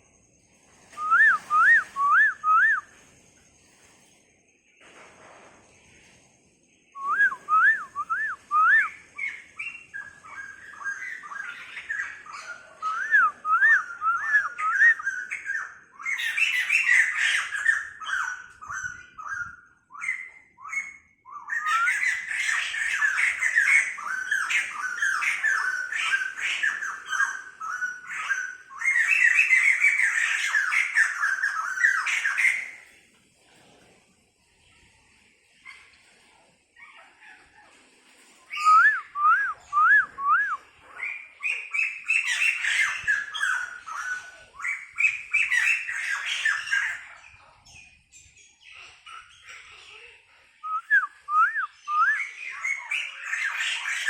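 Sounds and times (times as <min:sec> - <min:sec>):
bird singing whistled phrases: 0:00.9 - 0:03.0, 0:06.9 - 0:32.6, 0:38.5 - 0:46.9, 0:50.6 - 0:54.0.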